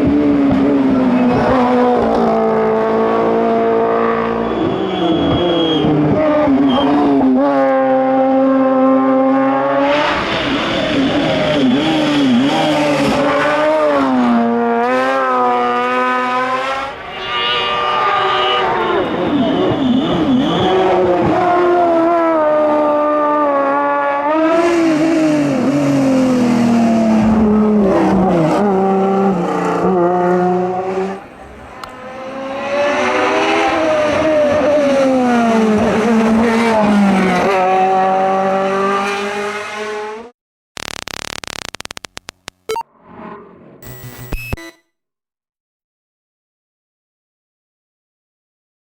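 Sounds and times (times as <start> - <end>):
race car engine revving: 0.0 - 17.0, 31.8 - 40.3
electronic beeping music: 40.8 - 42.9, 43.8 - 44.9.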